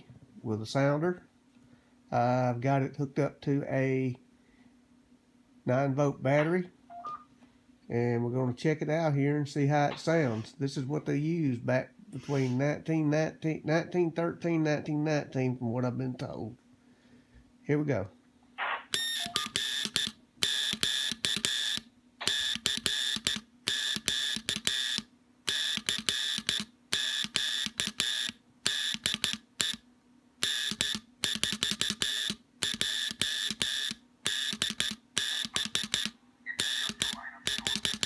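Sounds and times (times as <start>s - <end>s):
morse code buzzing tone: 6.9s - 7.3s, 18.8s - 29.8s, 30.4s - 38.0s.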